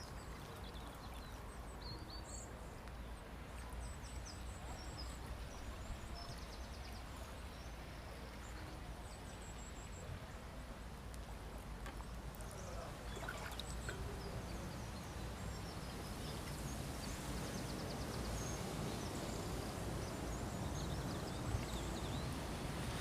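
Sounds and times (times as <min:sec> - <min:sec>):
floodwater rushing: 0:12.9 - 0:23.0.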